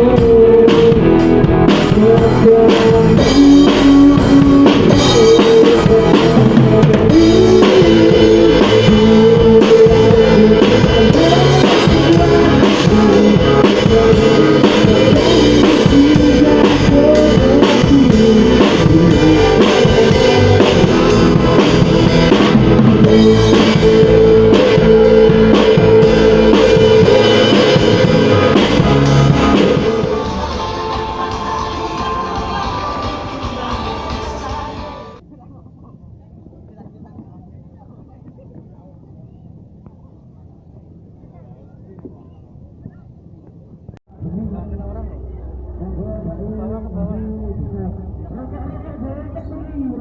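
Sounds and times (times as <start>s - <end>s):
drum kit beat: 0.0s - 35.2s
person singing: 0.0s - 35.2s
rock band playing: 0.0s - 35.2s.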